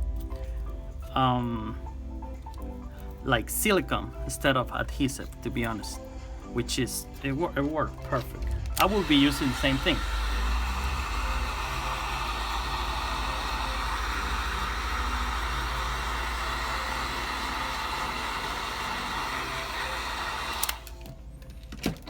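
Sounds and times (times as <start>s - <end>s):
heat gun fan blowing: 8.5s - 21.1s.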